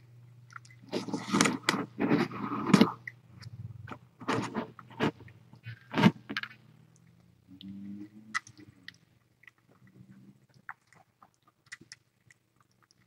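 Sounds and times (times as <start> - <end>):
wet chewing clicks: 0.4 - 4.0, 6.4 - 13.0.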